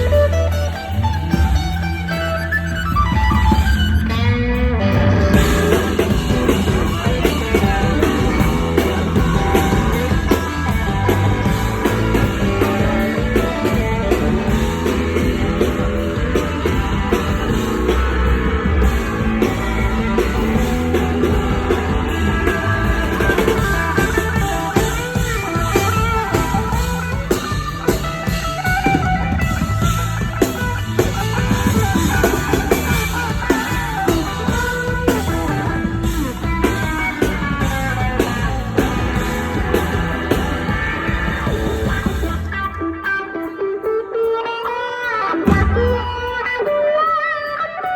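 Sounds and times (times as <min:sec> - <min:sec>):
live pop-rock band: 0:00.0 - 0:47.9.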